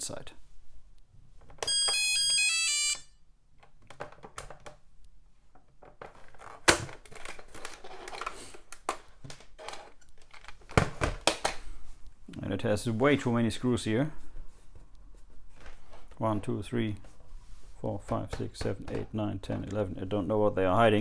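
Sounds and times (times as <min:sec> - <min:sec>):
plastic clicks and knocks: 0:03.6 - 0:04.8.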